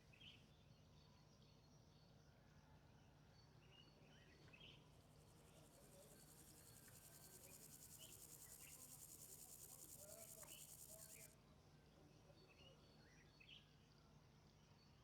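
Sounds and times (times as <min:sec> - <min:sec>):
grasshopper stridulating: 0:06.6 - 0:11.3.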